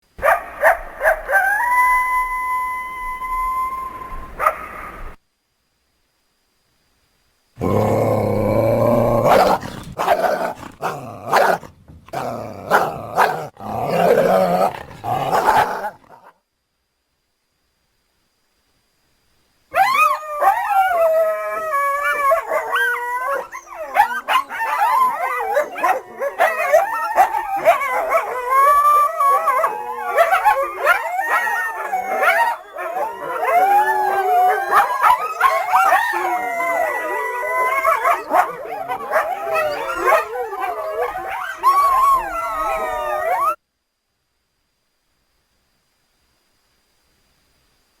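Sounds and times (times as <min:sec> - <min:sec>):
coyotes howling and yipping: 0:00.2 - 0:05.2, 0:07.6 - 0:16.2, 0:19.7 - 0:43.6.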